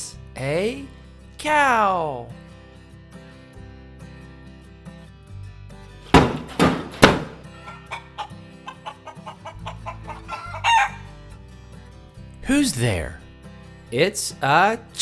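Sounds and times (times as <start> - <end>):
background music: 0.0 - 15.0
loud knocks: 6.1 - 7.5
chicken clucking: 7.5 - 11.1.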